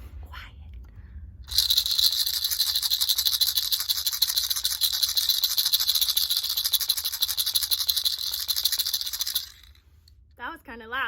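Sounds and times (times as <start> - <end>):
gemstones rattling in a tube: 1.5 - 10.1.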